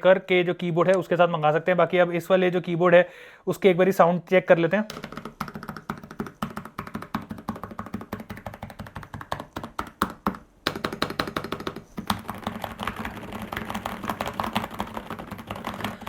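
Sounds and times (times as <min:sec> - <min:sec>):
typing on mechanical keyboard: 0:04.9 - 0:16.0.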